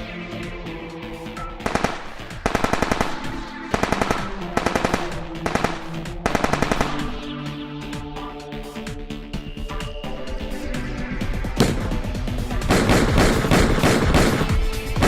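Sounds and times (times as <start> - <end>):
electronic music: 0.0 - 15.0
machine-gun bursts: 1.7 - 7.1, 12.7 - 14.6.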